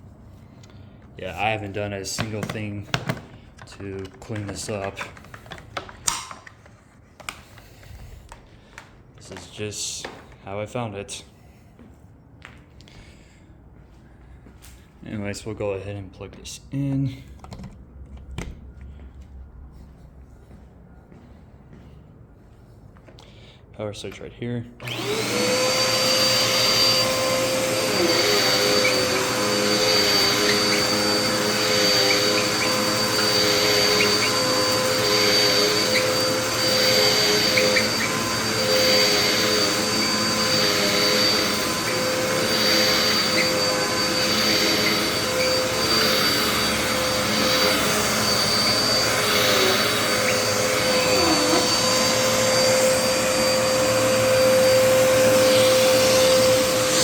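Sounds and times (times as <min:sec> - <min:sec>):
vacuum cleaner running: 0:01.2 - 0:06.5, 0:24.8 - 0:57.0.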